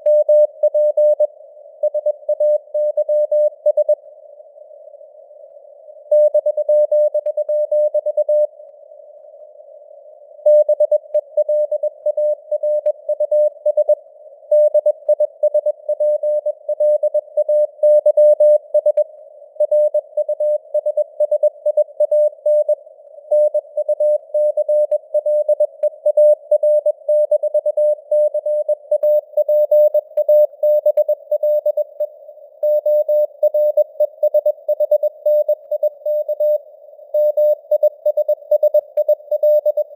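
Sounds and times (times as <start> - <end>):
morse code tone: 37.2 - 39.9.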